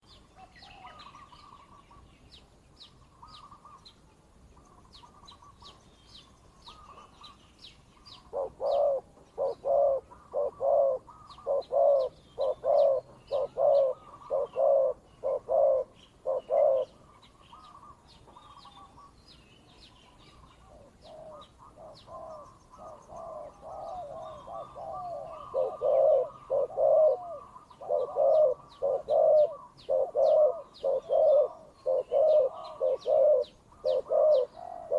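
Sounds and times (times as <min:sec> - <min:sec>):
small birds chirping: 0:00.0 - 0:34.9
doves cooing: 0:08.2 - 0:19.2, 0:20.4 - 0:34.9.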